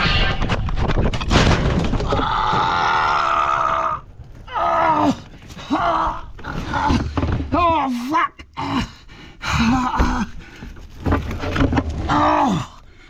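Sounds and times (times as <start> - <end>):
man crying in pain: 7.8 - 10.4.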